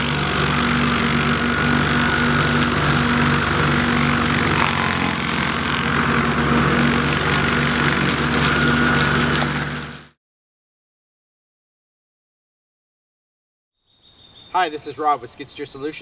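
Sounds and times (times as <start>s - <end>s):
rotary mower and diesel engine drone: 0.0s - 10.2s.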